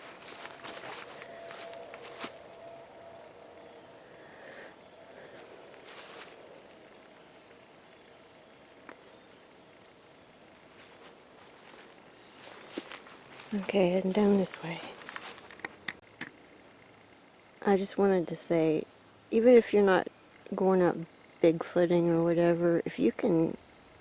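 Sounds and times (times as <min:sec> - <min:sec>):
footsteps on the ground: 0:00.0 - 0:02.6, 0:05.4 - 0:06.4, 0:10.7 - 0:15.8
high-pitched insect chorus: 0:00.0 - 0:24.0.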